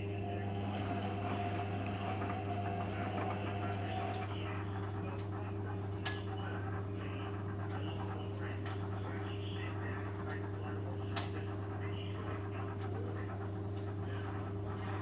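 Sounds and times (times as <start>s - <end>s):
high whine: 0.0s - 9.3s
washing machine humming: 0.0s - 15.0s.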